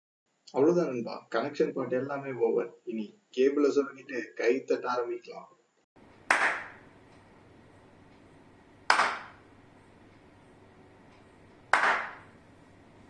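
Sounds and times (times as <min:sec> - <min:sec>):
hand claps: 0:06.2 - 0:06.9, 0:08.9 - 0:09.4, 0:11.5 - 0:12.4.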